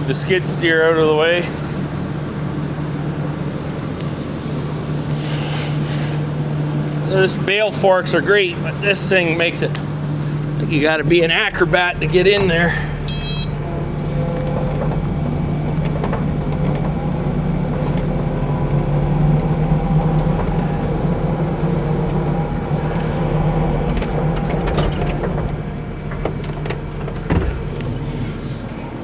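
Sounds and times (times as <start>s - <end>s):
skid steer engine running: 0.0s - 29.0s
short knocks and clanks: 22.0s - 28.4s.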